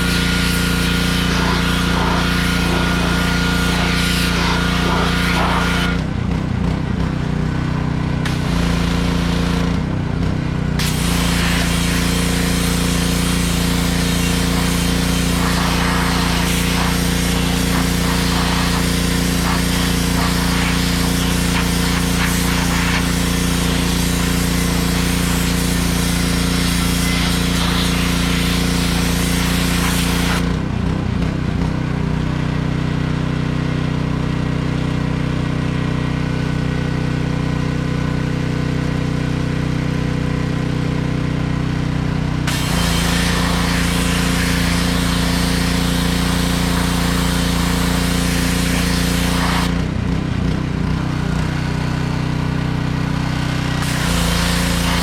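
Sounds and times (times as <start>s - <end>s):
pressure washer engine running: 0.0s - 55.0s
loud spray hiss: 10.8s - 30.4s, 42.5s - 49.7s, 53.8s - 55.0s.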